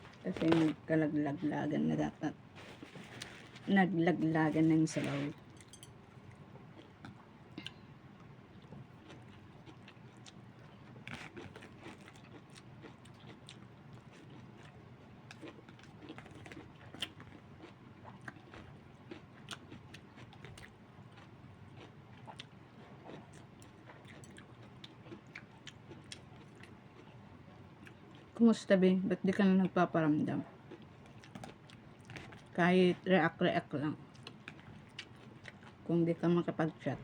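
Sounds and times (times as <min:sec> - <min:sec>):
person chewing food: 0:02.5 - 0:03.7, 0:05.4 - 0:28.4, 0:30.5 - 0:32.6, 0:34.1 - 0:35.8.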